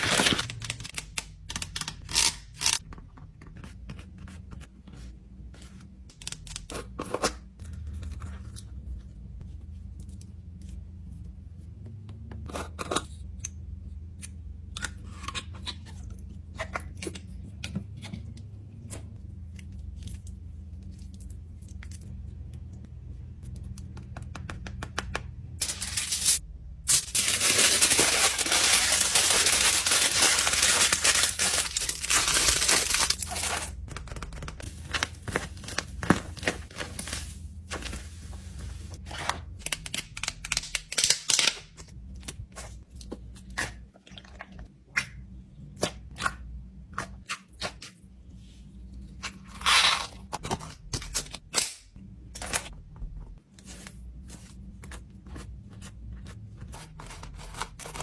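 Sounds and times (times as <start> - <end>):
plastic rustling: 25.6 - 33.8.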